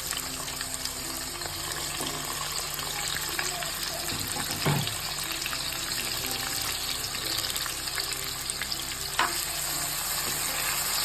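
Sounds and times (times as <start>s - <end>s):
onions sizzling in hot oil: 0.0s - 11.0s.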